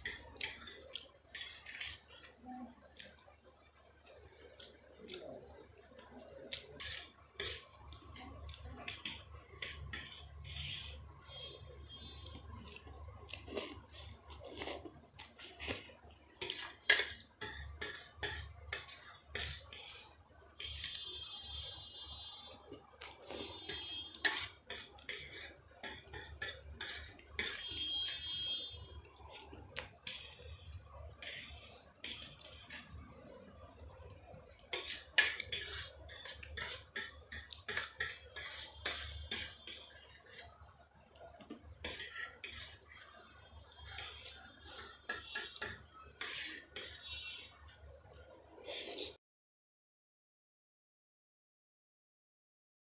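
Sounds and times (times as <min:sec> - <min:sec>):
cutlery clinking against a dish: 0:16.4 - 0:20.0, 0:23.6 - 0:28.3, 0:34.8 - 0:40.5, 0:44.0 - 0:47.6.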